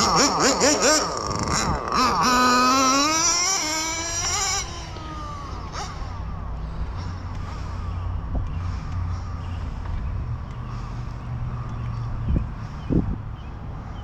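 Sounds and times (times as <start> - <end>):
rc car engine whining: 0.0 - 9.8.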